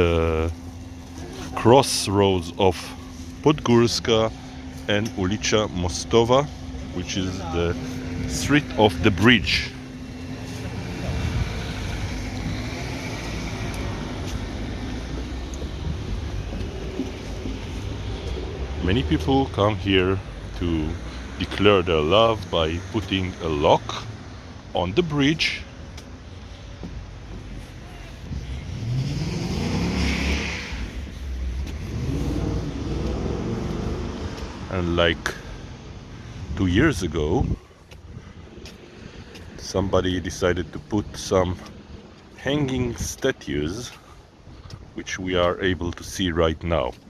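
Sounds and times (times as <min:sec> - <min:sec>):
city traffic rumble: 0:00.0 - 0:47.0
car accelerating past: 0:28.5 - 0:36.4.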